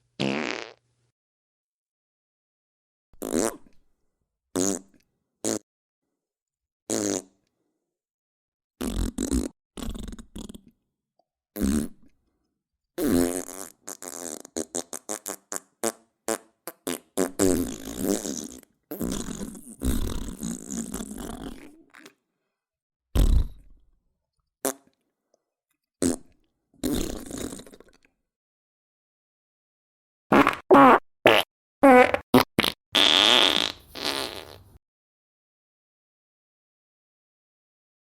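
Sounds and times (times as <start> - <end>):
fart sounds: 0.2 - 0.8, 3.2 - 3.8, 4.6 - 5.6, 6.9 - 7.4, 8.8 - 10.6, 11.6 - 12.0, 13.0 - 21.8, 23.2 - 23.8, 26.0 - 28.0, 30.3 - 34.8.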